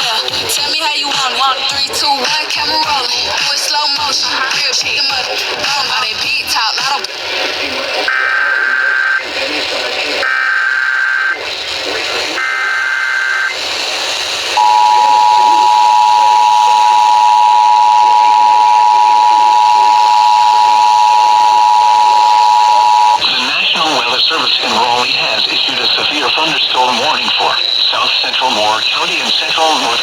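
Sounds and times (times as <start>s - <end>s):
two-tone attention signal: 14.6s - 23.3s
digital data tone bursts: 14.6s - 28.6s.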